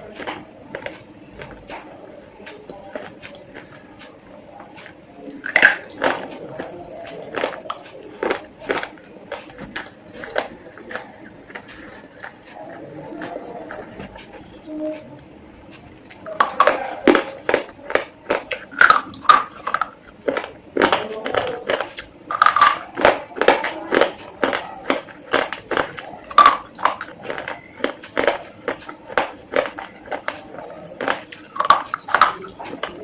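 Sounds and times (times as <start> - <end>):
brittle crunching bites: 4.8 - 13.9, 16.1 - 33.0.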